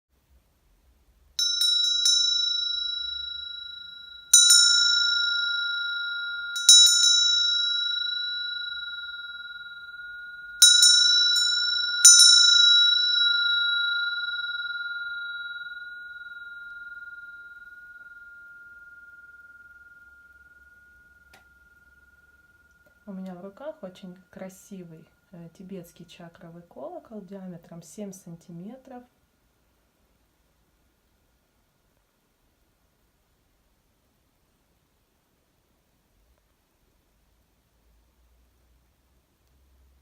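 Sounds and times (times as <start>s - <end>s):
hand bell ringing: 1.4s - 24.3s.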